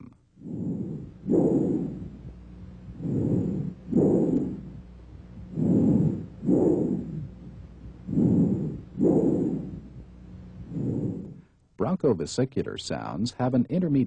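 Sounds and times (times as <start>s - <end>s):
breathing through stethoscope: 0.4s - 11.6s.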